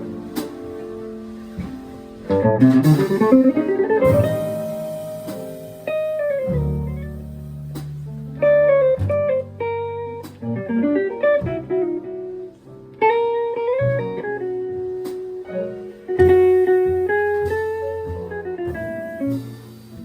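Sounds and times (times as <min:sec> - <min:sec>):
cymbals: 0:00.0 - 0:08.3
guitar melody with sliding notes: 0:00.0 - 0:20.0
jazz quartet playing: 0:00.0 - 0:20.0
moving bass line: 0:01.6 - 0:05.7, 0:06.4 - 0:10.6.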